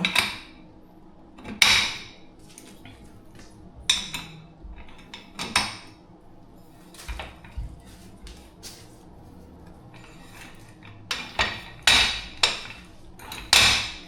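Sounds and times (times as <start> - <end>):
plastic and metal chair parts clattering: 6.8 - 9.0, 9.9 - 14.0.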